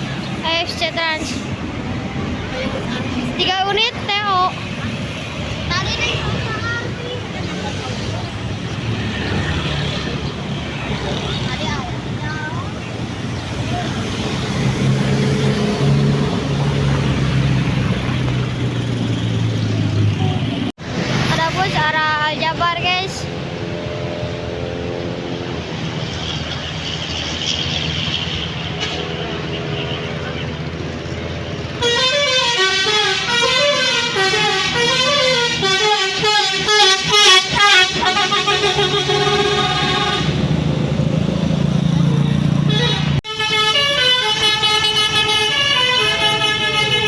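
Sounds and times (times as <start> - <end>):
large vehicle engine droning: 0.0 - 47.0
short loud horn blasts: 31.8 - 40.4, 42.7 - 47.0
bus horn playing tune: 31.8 - 40.6, 42.6 - 47.0.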